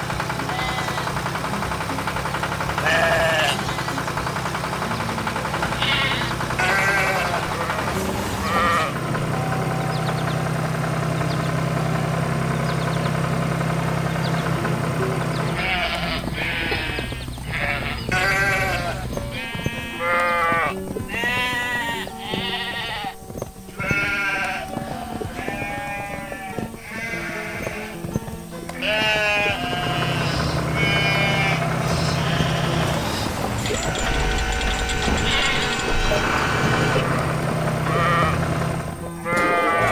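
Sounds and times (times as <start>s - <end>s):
background music: 0.0s - 39.9s
steady low hum: 0.0s - 39.9s.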